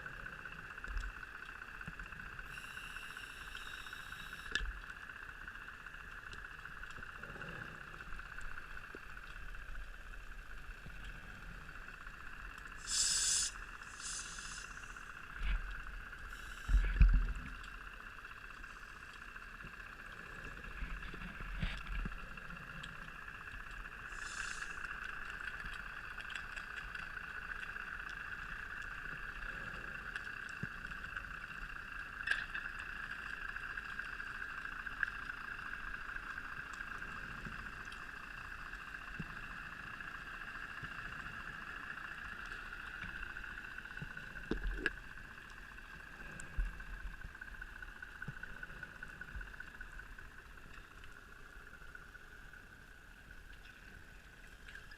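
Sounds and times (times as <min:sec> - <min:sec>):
steady underwater hum: 0:00.0 - 0:54.9
regulator bubbles hissing: 0:10.2 - 0:30.4.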